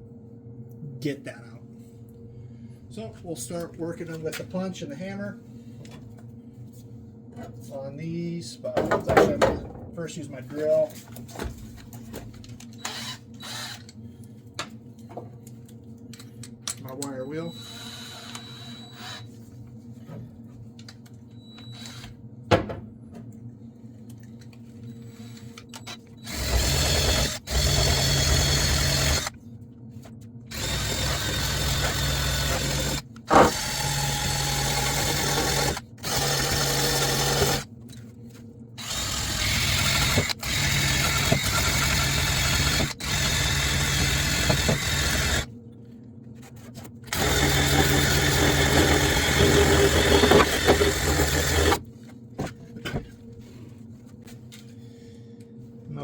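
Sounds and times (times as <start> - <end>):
drill with wire wheel brushing metal: 30.5 - 37.6, 38.8 - 45.4, 47.1 - 51.8.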